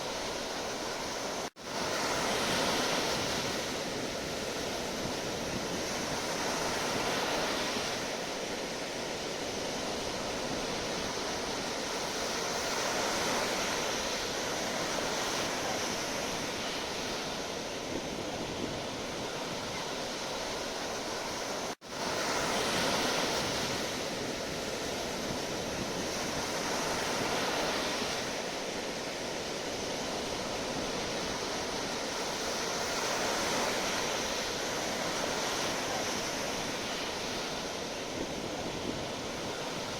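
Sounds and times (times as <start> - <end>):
sea waves washing onto shore: 0.0 - 39.9.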